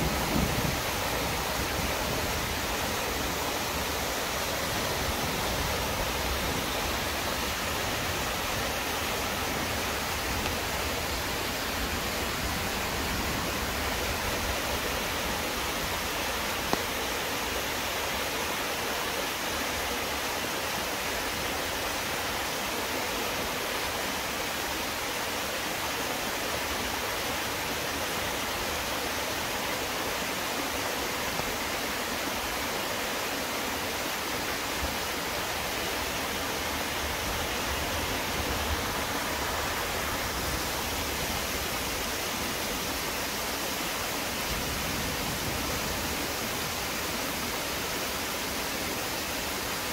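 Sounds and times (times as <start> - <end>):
waterfall roaring: 0.0 - 49.9.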